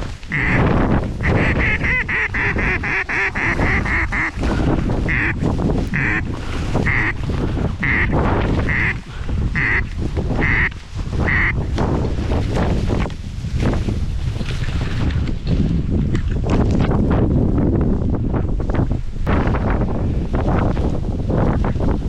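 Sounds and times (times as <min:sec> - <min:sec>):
wind rumbling on microphone: 0:00.0 - 0:22.0
duck quacking: 0:00.3 - 0:07.2, 0:07.8 - 0:09.0, 0:09.6 - 0:11.6.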